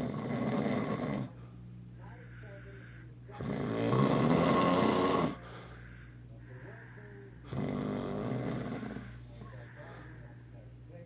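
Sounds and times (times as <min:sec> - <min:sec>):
man snoring: 0:03.5 - 0:05.4.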